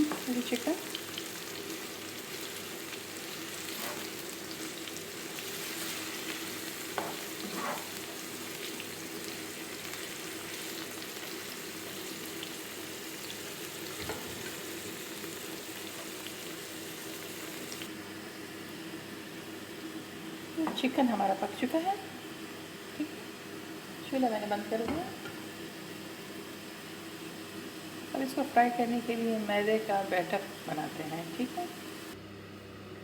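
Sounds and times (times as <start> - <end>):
chicken sizzling in oil: 0.0 - 18.2
utensil scraping the pan: 7.4 - 8.0.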